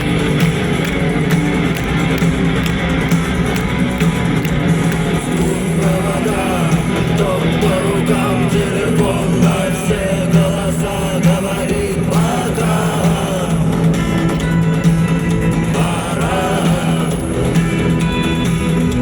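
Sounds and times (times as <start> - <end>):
rock band playing live: 0.0 - 19.0
person singing: 5.1 - 14.4, 15.6 - 18.1.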